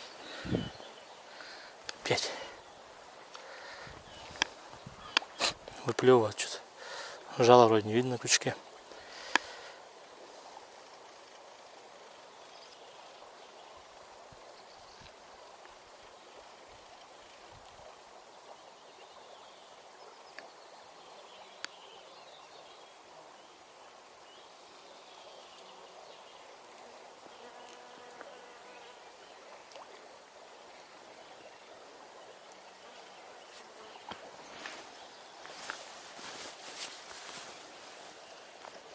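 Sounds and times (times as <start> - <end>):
insect buzzing: 0.0 - 5.7, 26.7 - 29.3, 32.9 - 38.9.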